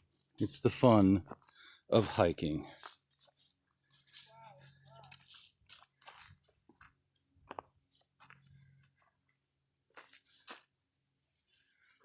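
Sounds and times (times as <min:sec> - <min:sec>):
footsteps through dry leaves: 0:02.7 - 0:07.0, 0:09.9 - 0:11.7.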